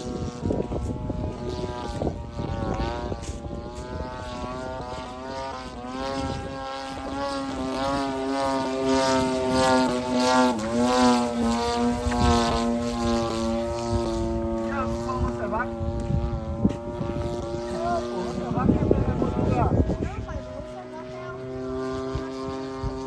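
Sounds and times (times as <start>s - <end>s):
model airplane engine droning: 0.0s - 23.0s
wind on microphone: 0.0s - 23.0s.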